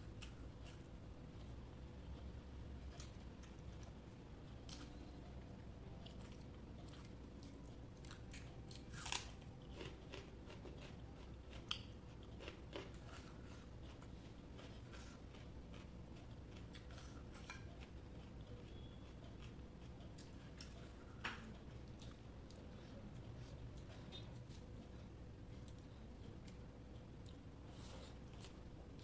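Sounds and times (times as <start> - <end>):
person chewing food: 6.0 - 29.0.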